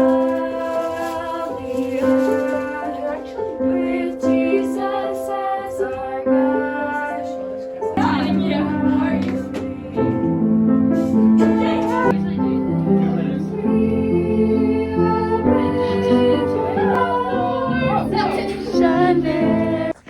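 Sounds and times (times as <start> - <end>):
woman singing with instruments: 0.0 - 10.2, 13.0 - 20.0.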